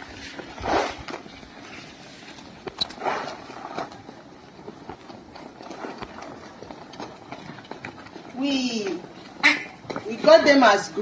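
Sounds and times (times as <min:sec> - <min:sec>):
ducks feeding clicks and rustles: 0:00.1 - 0:10.6
faint duck calls: 0:09.4 - 0:09.8.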